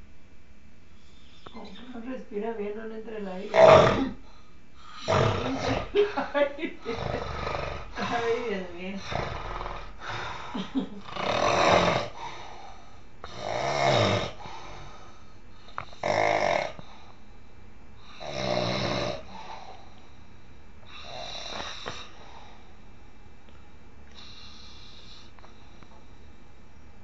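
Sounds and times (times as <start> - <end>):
man snoring heavily: 3.5 - 4.2, 4.9 - 15.1, 15.8 - 17.0, 18.1 - 19.8, 20.9 - 22.7.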